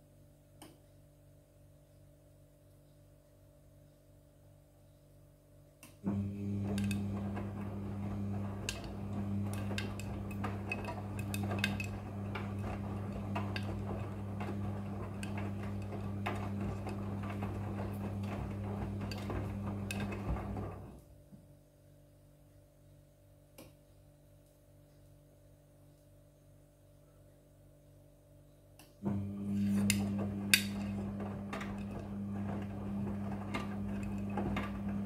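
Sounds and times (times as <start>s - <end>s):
washing machine motor hum: 6.0s - 21.3s, 29.0s - 35.0s.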